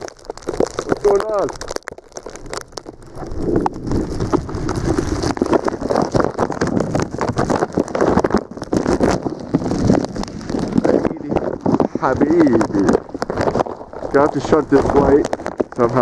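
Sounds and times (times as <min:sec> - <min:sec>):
wind buffeting microphone: 0:03.0 - 0:16.0
footsteps crunching through snow: 0:03.2 - 0:16.0.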